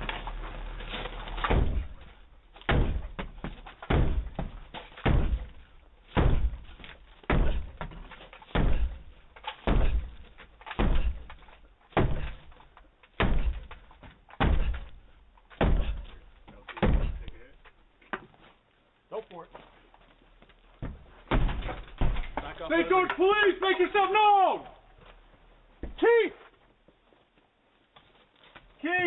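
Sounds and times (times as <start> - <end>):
sledgehammer banging on door: 1.4 - 12.6, 13.2 - 16.2, 16.8 - 17.3, 20.8 - 22.7.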